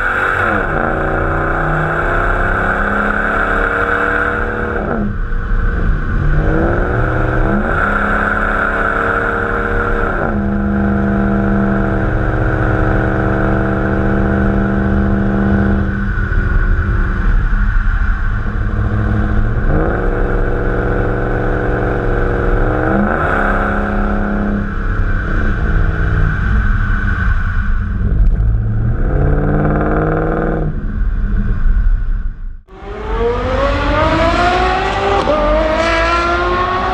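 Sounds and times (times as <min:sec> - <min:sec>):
engine revving: 0:00.0 - 0:31.6, 0:32.6 - 0:36.9.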